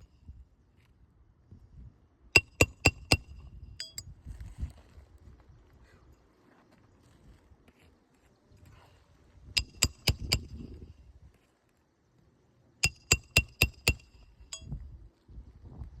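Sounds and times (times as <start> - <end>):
hammer striking metal: 2.4 - 4.0, 9.6 - 10.5, 12.8 - 14.2.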